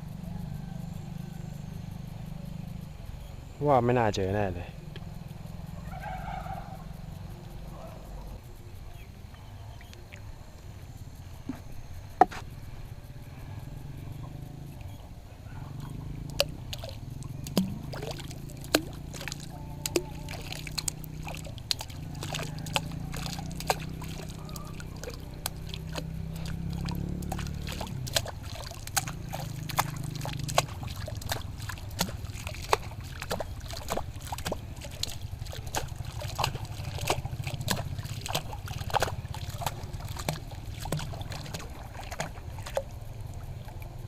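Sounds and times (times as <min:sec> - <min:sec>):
low steady rumble: 0:00.0 - 0:44.0
water trickling and splashing: 0:14.2 - 0:44.0
water drips and plinks: 0:15.8 - 0:44.0.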